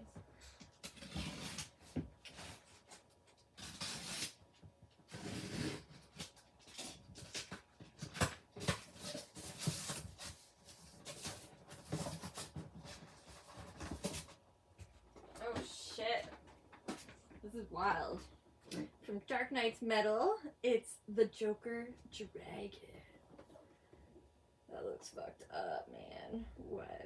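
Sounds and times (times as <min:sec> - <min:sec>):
packaging rustling and crinkling: 0:05.0 - 0:14.4.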